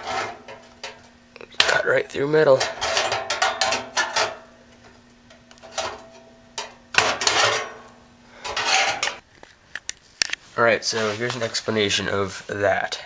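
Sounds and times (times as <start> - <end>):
small parts clattering and scraping: 0.0 - 1.8, 2.4 - 4.9, 5.5 - 11.6.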